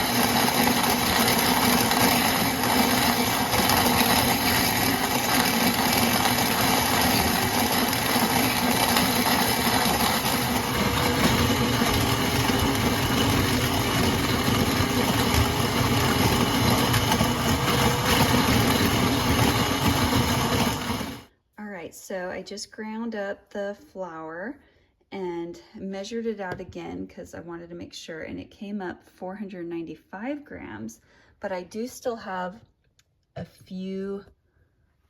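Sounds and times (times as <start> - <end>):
stand mixer grinding grain: 0.0 - 21.3.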